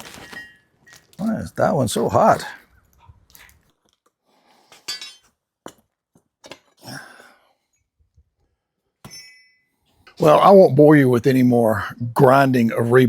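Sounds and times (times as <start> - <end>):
steel rebar clinking: 9.0 - 10.2.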